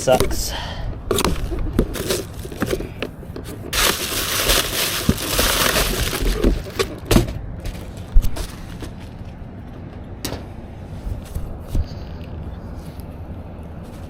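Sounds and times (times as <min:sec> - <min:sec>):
packaging being torn: 0:03.7 - 0:07.0.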